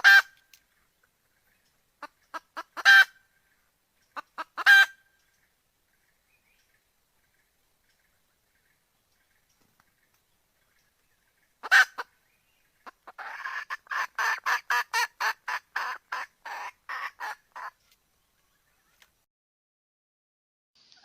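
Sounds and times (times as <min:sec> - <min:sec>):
hen clucking quickly: 0:00.0 - 0:00.4, 0:02.0 - 0:03.2, 0:04.1 - 0:05.1, 0:11.4 - 0:12.2, 0:12.8 - 0:17.8.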